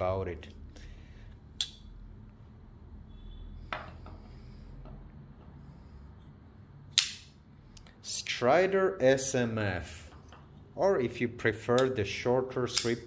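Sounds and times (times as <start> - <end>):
folding knife clicks: 12.7 - 13.0.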